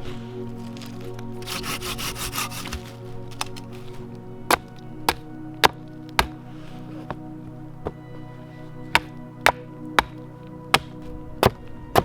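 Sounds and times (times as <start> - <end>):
background music: 0.0 - 12.0
wood chopping knocks: 4.5 - 6.4, 8.9 - 12.0.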